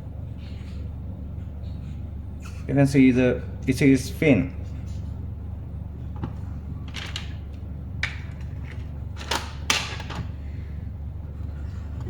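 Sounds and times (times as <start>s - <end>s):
steady low hum: 0.0s - 12.0s
knocks and clicks of handled parts: 6.2s - 10.3s.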